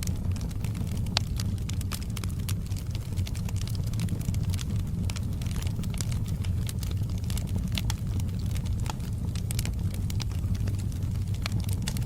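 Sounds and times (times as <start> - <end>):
low rumble: 0.0 - 12.0
wood fire crackling: 0.0 - 12.0.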